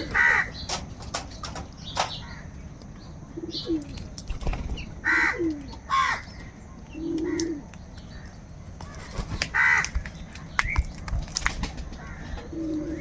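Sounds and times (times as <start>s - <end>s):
crows cawing: 0.0s - 0.6s, 5.0s - 7.6s, 8.2s - 10.0s, 12.0s - 13.0s.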